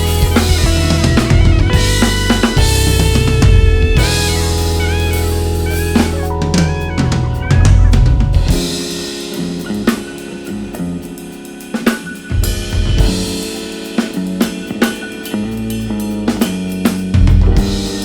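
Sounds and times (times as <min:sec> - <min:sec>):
drum kit hits: 0:00.0 - 0:18.0
live band music: 0:00.0 - 0:18.0.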